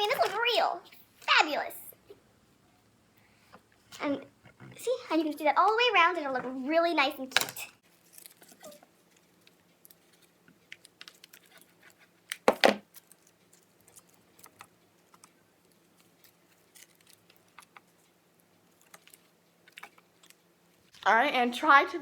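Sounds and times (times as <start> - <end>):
leaves rustling: 7.9 - 9.3
dry leaves crinkling: 7.9 - 10.3, 15.6 - 17.6.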